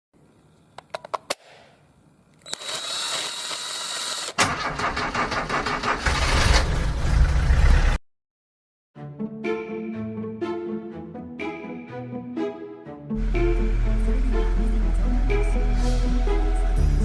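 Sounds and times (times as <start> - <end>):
starter motor whirring: 2.4 - 7.5.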